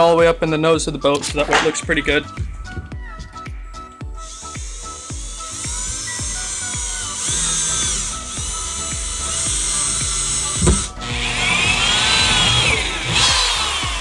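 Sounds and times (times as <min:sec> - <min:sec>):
background music with steady beat: 0:00.0 - 0:14.0
power drill motor whine: 0:04.1 - 0:14.0.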